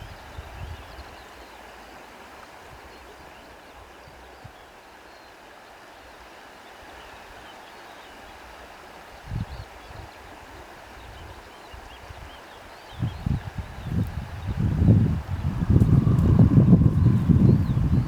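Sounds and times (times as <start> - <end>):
stream flowing: 0.0 - 18.0
low rumble: 15.1 - 18.0.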